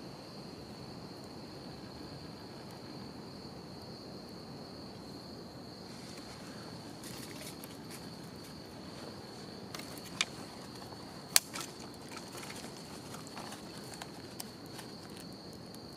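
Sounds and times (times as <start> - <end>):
high-pitched insect call: 0.0 - 15.9
wood fire crackling: 0.4 - 15.9
sharp fire pops: 9.7 - 15.9.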